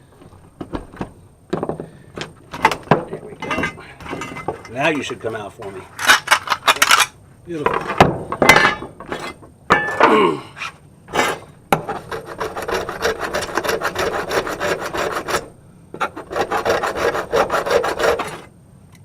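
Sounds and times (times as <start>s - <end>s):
file rasping on brass: 11.2s - 18.5s.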